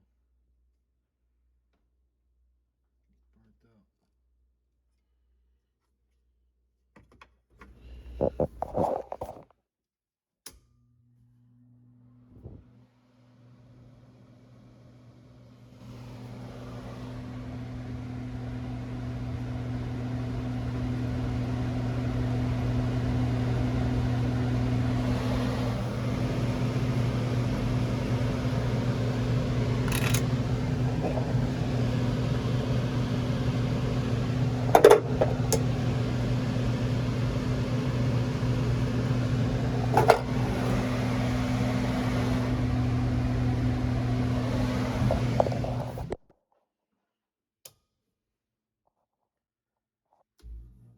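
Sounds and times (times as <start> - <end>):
electrical hum: 15.9 - 46.2.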